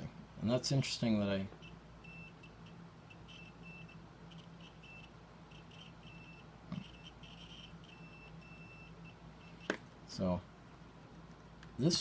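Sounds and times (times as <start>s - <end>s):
multimeter continuity beeps: 1.5s - 9.8s.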